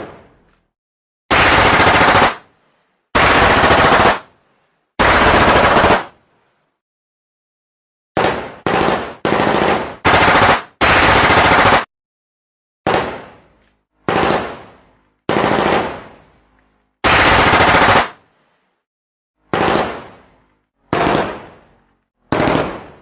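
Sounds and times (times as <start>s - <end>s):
automatic gunfire bursts: 1.3s - 2.4s, 3.2s - 4.2s, 5.0s - 6.1s, 8.2s - 11.9s, 14.1s - 14.6s, 15.3s - 16.0s, 17.0s - 18.2s, 19.5s - 20.1s, 20.9s - 21.5s, 22.3s - 23.0s.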